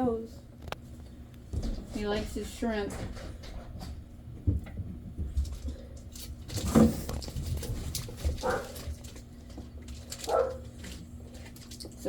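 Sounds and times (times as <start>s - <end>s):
low steady hum: 0.0s - 12.0s
dog yelping: 8.4s - 8.8s, 10.2s - 10.6s.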